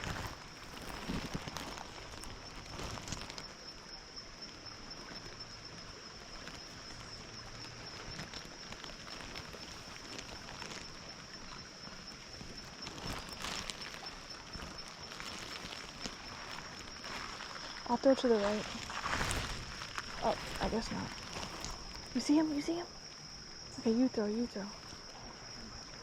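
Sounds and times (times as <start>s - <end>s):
footsteps in water and stones: 0.0s - 26.0s
high-pitched insect chorus: 0.0s - 26.0s
creek rushing: 4.5s - 23.9s.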